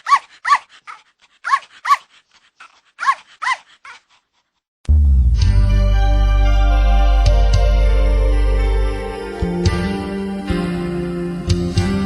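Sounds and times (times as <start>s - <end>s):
puppy barking in high yaps: 0.0s - 2.1s, 3.0s - 4.1s
music: 4.9s - 12.0s.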